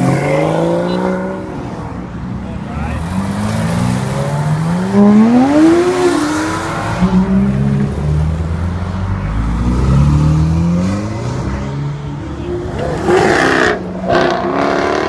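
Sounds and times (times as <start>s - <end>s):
car engines revving: 0.0s - 15.0s.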